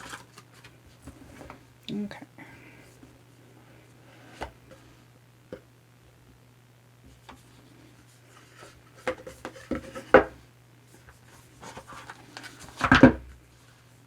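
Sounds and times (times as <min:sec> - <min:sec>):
packaging clatter: 0:00.0 - 0:00.7
hands handling card packaging: 0:00.0 - 0:01.6, 0:10.9 - 0:13.1.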